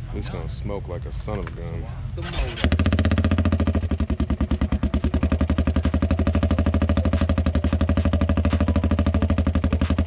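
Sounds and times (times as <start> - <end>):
atv engine idling: 2.2 - 10.0.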